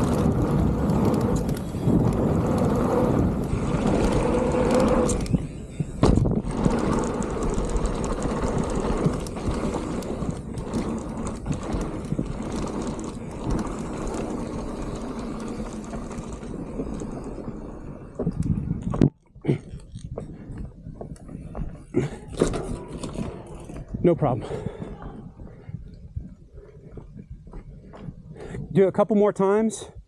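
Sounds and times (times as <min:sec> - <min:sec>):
bike rattling and knocking: 0:00.0 - 0:24.9
tyre and wind noise: 0:00.0 - 0:30.0
heavy thump: 0:06.0 - 0:06.4.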